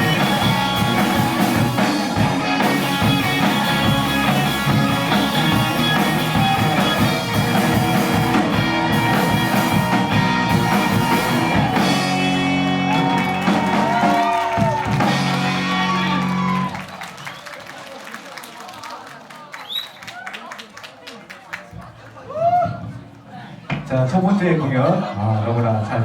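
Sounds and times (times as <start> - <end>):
live rock band playing: 0.0 - 17.0.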